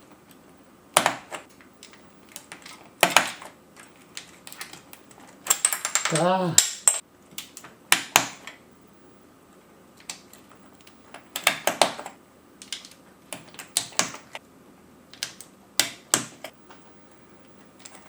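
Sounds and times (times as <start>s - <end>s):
keyboard keys clicking: 10.0s - 14.4s.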